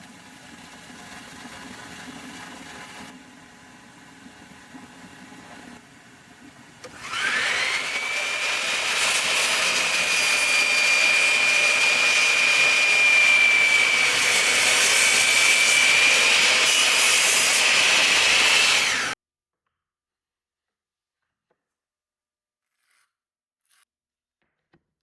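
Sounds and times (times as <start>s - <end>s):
power saw blade whine: 6.8s - 19.2s
saw rasping through wood: 6.9s - 19.2s.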